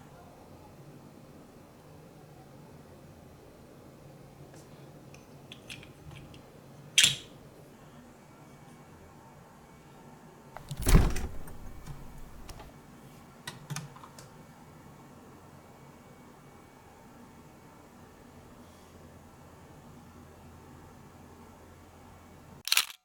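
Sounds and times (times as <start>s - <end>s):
knock with brief rattle: 10.6s - 12.7s.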